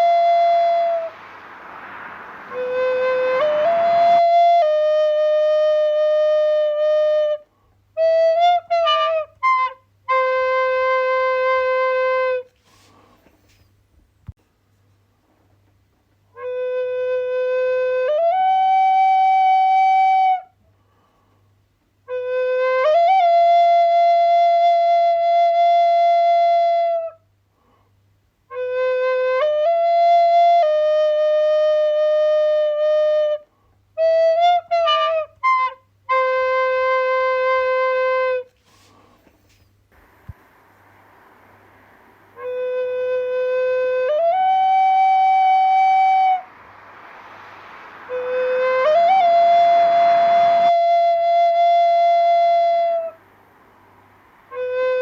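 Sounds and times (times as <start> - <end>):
flute playing held notes: 0.0 - 13.0, 34.0 - 55.0.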